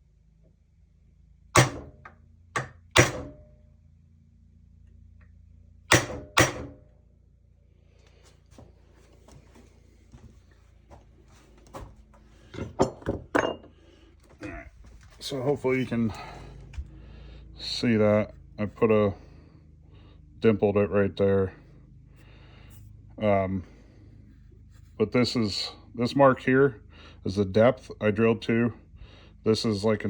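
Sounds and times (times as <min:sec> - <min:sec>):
faint steady hum: 0:00.0 - 0:30.0
metal tools knocking on workbench: 0:01.6 - 0:01.9, 0:12.5 - 0:13.8.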